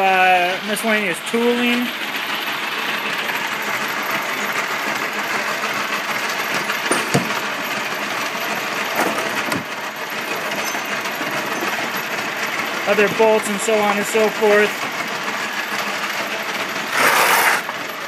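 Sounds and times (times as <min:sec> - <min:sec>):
mechanical running noise: 0:00.1 - 0:18.0
sharp metallic clinks: 0:10.5 - 0:11.7.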